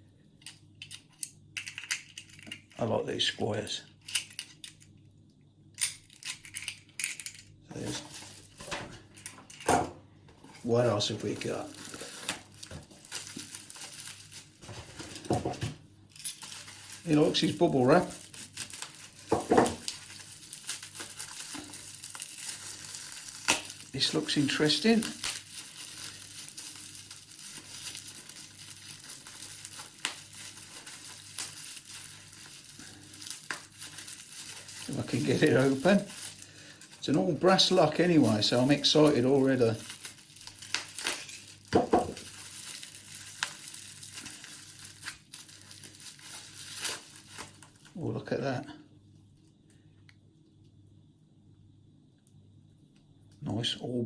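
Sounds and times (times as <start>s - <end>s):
packaging crackling and rustling: 6.0s - 9.4s, 10.4s - 48.1s
bubble wrap crinkling: 7.8s - 9.2s, 10.4s - 48.6s.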